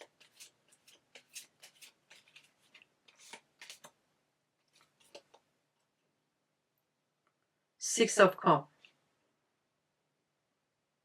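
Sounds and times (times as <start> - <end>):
cards clicking and rustling: 0.0 - 4.0, 4.7 - 5.4.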